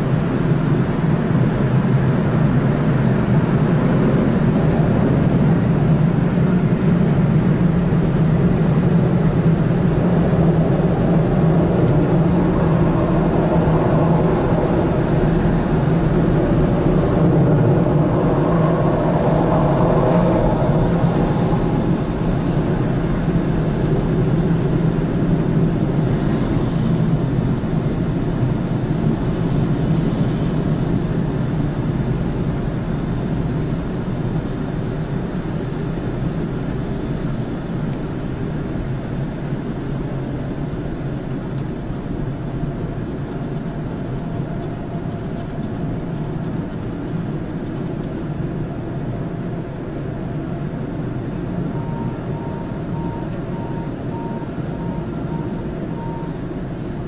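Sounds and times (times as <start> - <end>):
car wash machine rumbling: 0.0 - 33.4.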